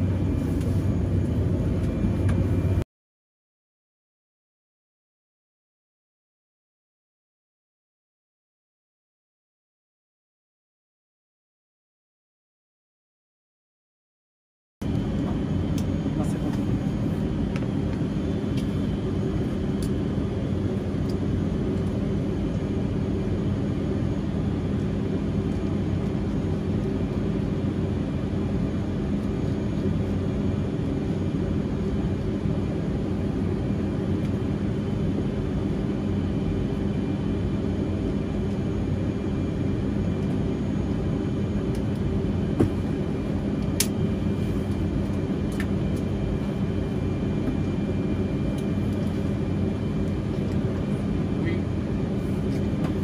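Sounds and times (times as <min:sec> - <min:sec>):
aircraft engine droning: 0:00.0 - 0:02.8, 0:14.8 - 0:53.0.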